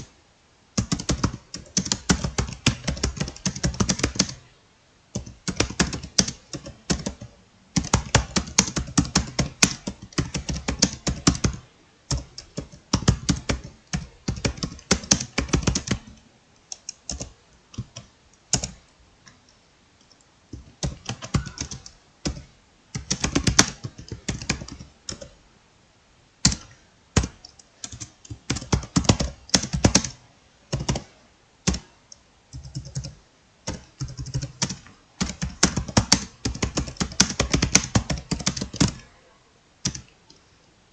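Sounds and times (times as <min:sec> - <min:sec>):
fast typing on keyboard: 0:00.8 - 0:04.5, 0:05.1 - 0:18.8, 0:20.5 - 0:25.4, 0:26.4 - 0:31.9, 0:32.5 - 0:39.1, 0:39.8 - 0:40.1.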